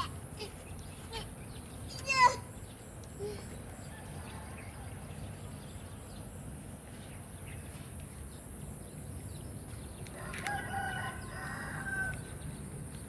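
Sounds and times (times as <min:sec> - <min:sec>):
rooster crowing: 0:10.2 - 0:12.3.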